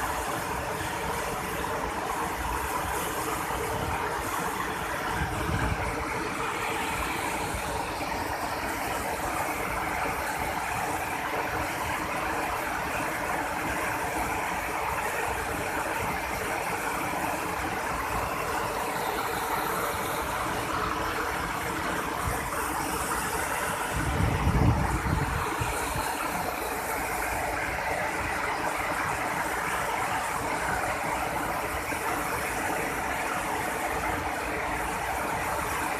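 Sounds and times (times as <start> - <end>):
waterfall roaring: 0.0 - 35.9
low buffeting rumble: 23.8 - 26.3.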